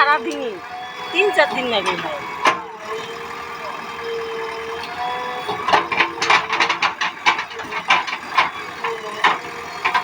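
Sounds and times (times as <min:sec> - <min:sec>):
backhoe loader whine: 0:00.0 - 0:10.0
clatter of mechanical knocks: 0:05.4 - 0:10.0.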